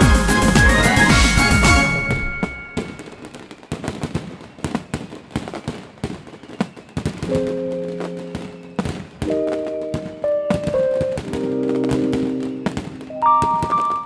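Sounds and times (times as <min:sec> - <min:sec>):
music with held chords: 0:00.0 - 0:02.3
fireworks crackling and popping: 0:00.0 - 0:14.0.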